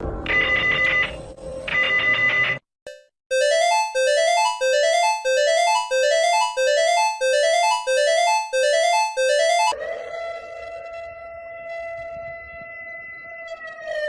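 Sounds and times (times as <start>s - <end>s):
emergency alert tone rising notes: 2.9s - 9.8s
ringing alarm trill: 2.9s - 9.8s.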